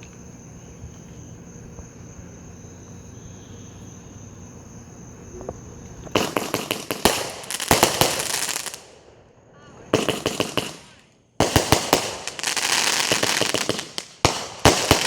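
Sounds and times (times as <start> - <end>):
crickets trilling: 0.0 - 15.0
fireworks cake cracking: 5.4 - 8.9, 9.9 - 15.0.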